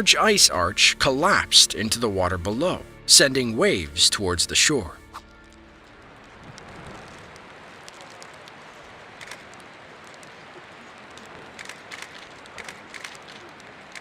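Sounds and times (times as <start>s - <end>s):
steady outdoor hiss: 0.0s - 14.0s
faint clicks: 5.2s - 14.0s.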